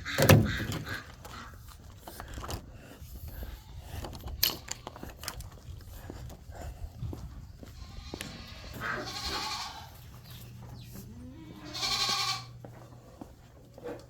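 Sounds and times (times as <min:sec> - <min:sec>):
goats bleating: 0:07.6 - 0:10.2, 0:11.0 - 0:12.7.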